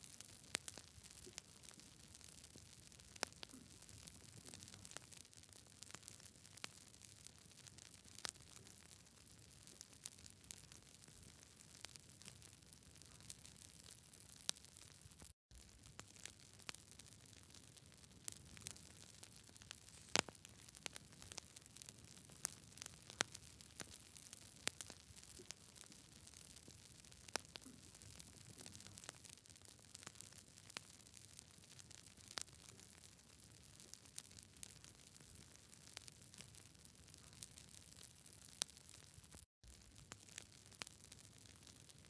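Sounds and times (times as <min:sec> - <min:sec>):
campfire crackling and popping: 0:00.0 - 0:42.0
faint steady hiss: 0:17.9 - 0:23.4
faint hiss: 0:19.8 - 0:20.4.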